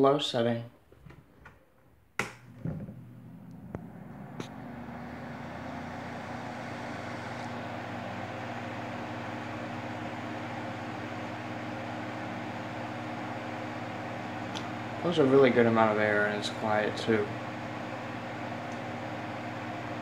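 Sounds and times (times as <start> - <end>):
fan switch click: 2.2 - 2.7
table fan motor whirring: 2.2 - 11.0.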